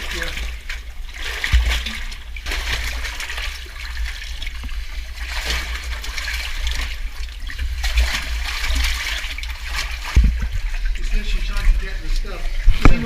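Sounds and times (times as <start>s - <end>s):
water trickling and splashing: 0.0s - 13.0s.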